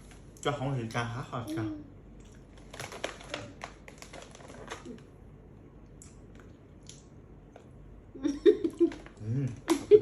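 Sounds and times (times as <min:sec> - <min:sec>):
chewing with wet mouth clicks: 0:05.9 - 0:07.8.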